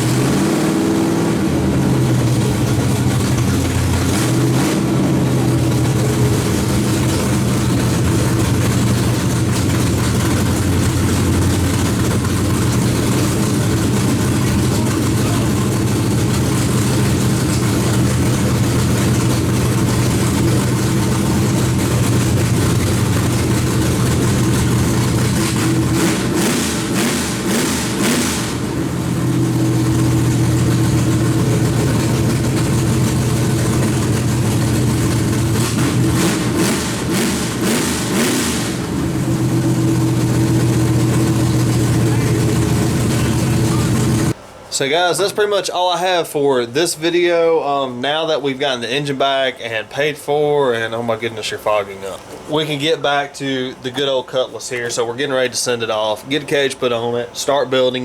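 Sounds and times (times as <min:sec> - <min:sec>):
race engine idling and revving: 0:00.0 - 0:44.4.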